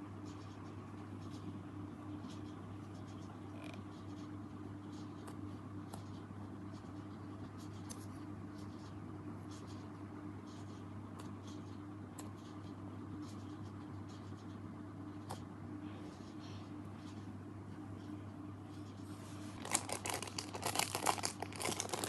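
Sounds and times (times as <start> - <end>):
low electrical hum: 0.0 - 22.0
foam toys rustling and crackling: 19.5 - 22.0.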